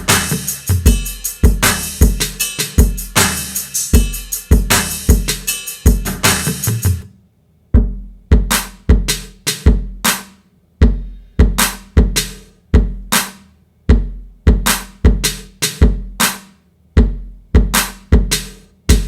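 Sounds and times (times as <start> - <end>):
kick drum: 0.0 - 3.3, 4.0 - 6.3, 7.8 - 10.0, 10.8 - 13.2, 13.9 - 16.2, 17.0 - 19.0
snare hits: 0.1 - 0.6, 1.6 - 2.0, 3.2 - 3.6, 10.1 - 10.4, 13.2 - 13.4, 14.7 - 16.6.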